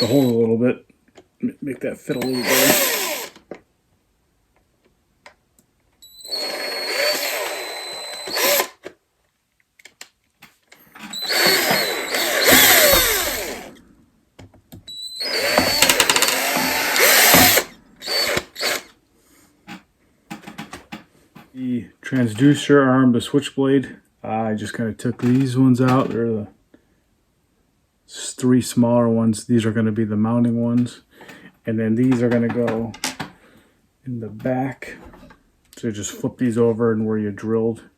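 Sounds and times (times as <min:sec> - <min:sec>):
electric drill whirring: 0:00.0 - 0:00.4, 0:02.1 - 0:03.4, 0:06.0 - 0:08.9, 0:11.1 - 0:13.8, 0:14.9 - 0:18.9.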